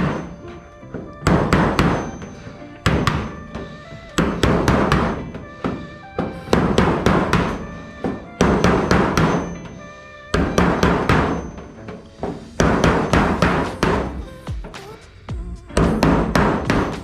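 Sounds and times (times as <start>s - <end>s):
sheet metal ringing: 0.0s - 14.2s
air chisel hammering rivets: 6.5s - 9.7s.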